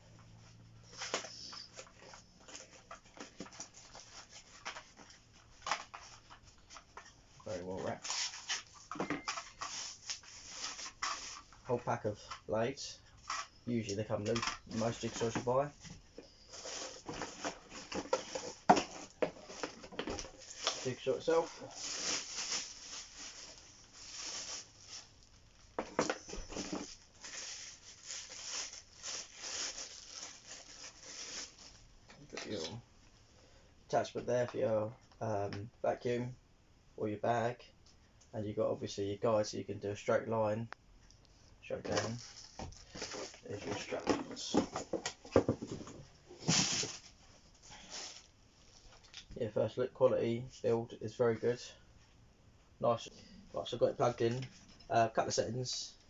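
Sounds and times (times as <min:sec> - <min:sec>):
packaging rustling and crinkling: 0:00.9 - 0:11.6, 0:16.4 - 0:31.8, 0:41.9 - 0:49.3.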